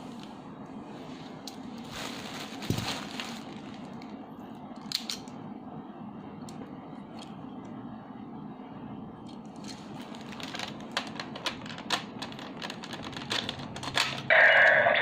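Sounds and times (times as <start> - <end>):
toy electronic voice: 14.3 - 15.0.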